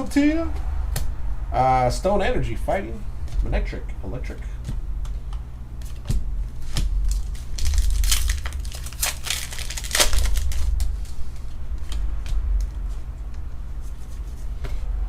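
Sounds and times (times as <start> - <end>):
foil wrapper crinkling and tearing: 6.6 - 11.5.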